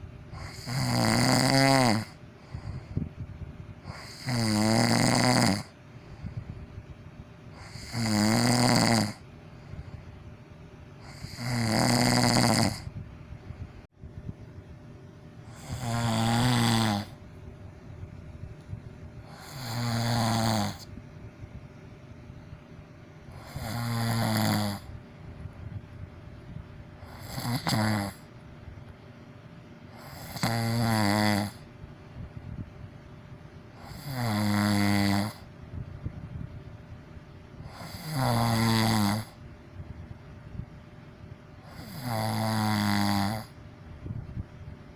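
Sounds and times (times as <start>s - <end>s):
person snoring loudly: 0.3s - 3.0s, 3.8s - 6.4s, 7.6s - 9.9s, 11.0s - 13.0s, 15.5s - 17.2s, 19.2s - 20.9s, 23.3s - 25.0s, 27.0s - 28.3s, 30.0s - 31.7s, 33.8s - 35.5s, 37.6s - 39.4s, 41.6s - 43.6s.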